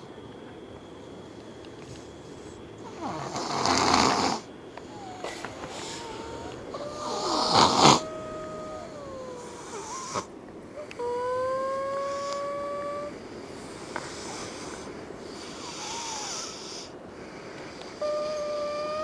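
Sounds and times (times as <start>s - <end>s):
soft breathy snoring: 2.4s - 19.0s
nose whistling while snoring: 2.9s - 10.3s, 14.0s - 16.9s, 18.0s - 19.0s.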